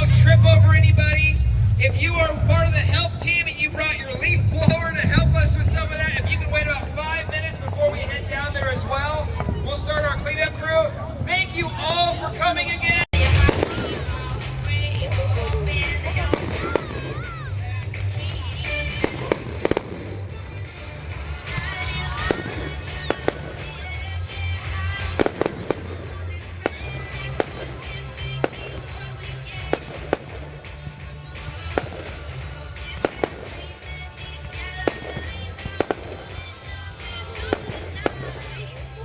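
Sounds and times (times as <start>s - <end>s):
background music with bass line: 0.0s - 39.0s
fireworks banging: 0.0s - 39.0s.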